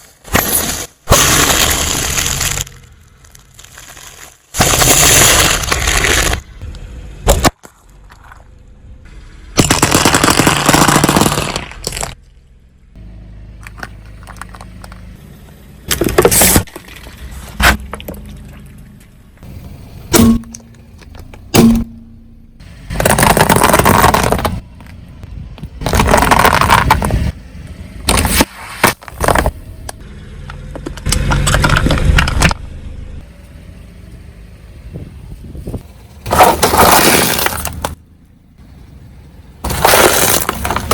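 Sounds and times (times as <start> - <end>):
tyres crushing objects: 0.0 - 6.5, 7.2 - 8.4, 9.6 - 12.2, 19.4 - 22.2, 22.8 - 25.0, 25.6 - 27.4, 28.0 - 29.6, 36.2 - 38.0, 39.6 - 40.9
low vehicle rumble: 5.2 - 40.9.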